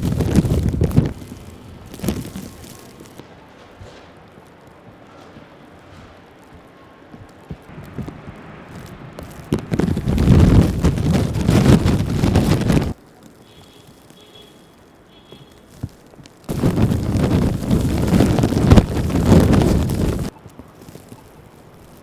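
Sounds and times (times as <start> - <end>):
wind buffeting microphone: 0.0 - 3.2, 7.6 - 13.0, 16.5 - 21.2.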